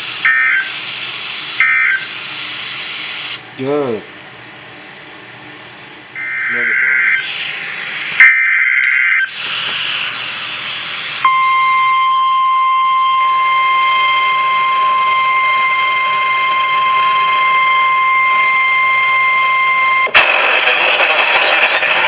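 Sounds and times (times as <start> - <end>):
radio hiss: 0.0 - 3.7, 6.2 - 11.3, 13.4 - 22.0
buzzing digital header tones: 6.2 - 7.3, 11.2 - 20.2
steady high alert tone: 6.2 - 7.4, 11.2 - 20.2.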